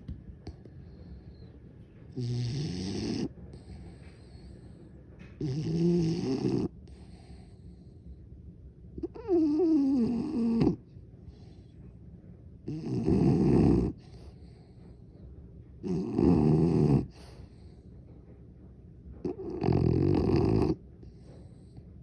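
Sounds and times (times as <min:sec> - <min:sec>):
dog snoring: 0:02.1 - 0:08.0, 0:09.0 - 0:11.6, 0:12.6 - 0:14.8, 0:15.8 - 0:17.9, 0:19.2 - 0:21.8.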